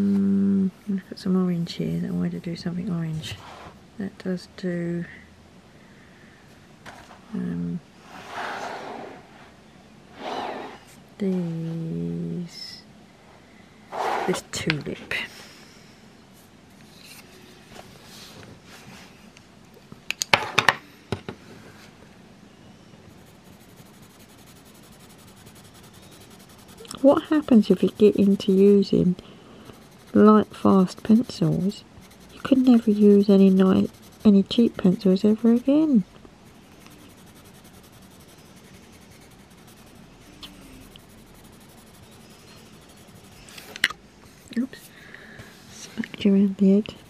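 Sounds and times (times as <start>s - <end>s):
pencil scratching on paper: 23.2s - 43.6s.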